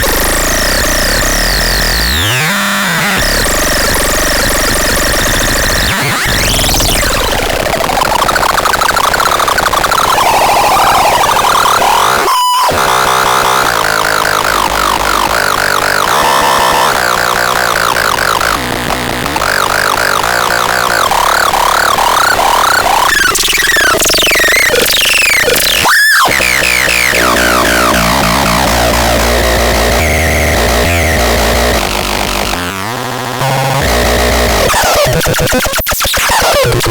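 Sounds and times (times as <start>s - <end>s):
harsh electronic synthesizer noise: 0.0s - 36.9s
sharp filter sweep: 23.3s - 32.4s.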